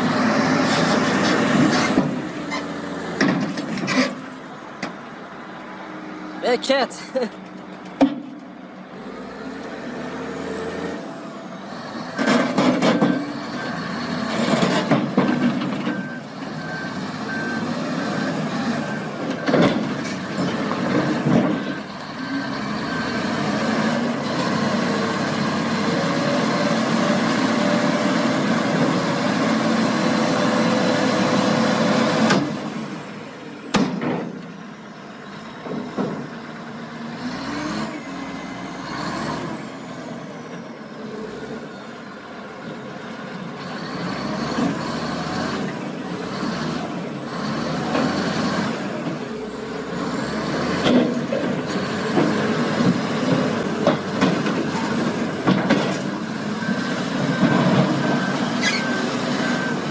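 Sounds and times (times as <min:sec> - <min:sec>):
loud clanks and knocks: 0:03.2 - 0:04.2, 0:14.5 - 0:16.0, 0:33.7 - 0:34.4, 0:50.8 - 0:56.0
heavy machinery running: 0:35.5 - 0:59.9.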